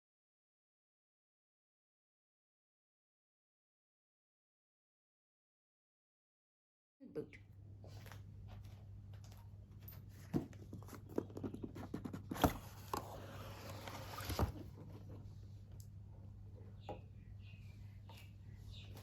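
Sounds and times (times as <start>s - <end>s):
low electrical hum: 7.0s - 19.0s
cardboard tearing: 12.1s - 14.7s.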